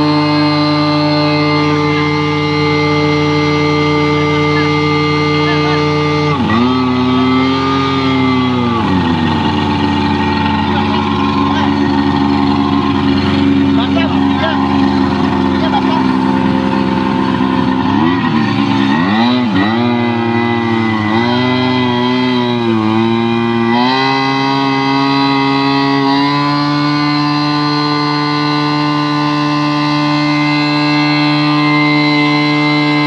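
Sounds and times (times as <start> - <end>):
pump engine revving: 0.0 - 33.0.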